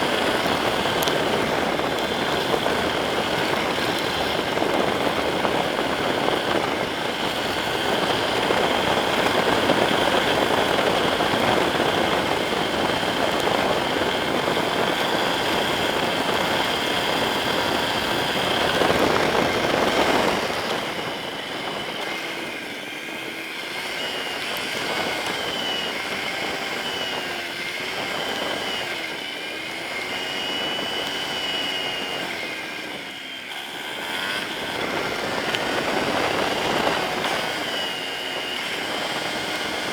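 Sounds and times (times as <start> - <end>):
wind noise rushing: 0.0 - 23.0
motorcycle engine running: 0.0 - 39.9.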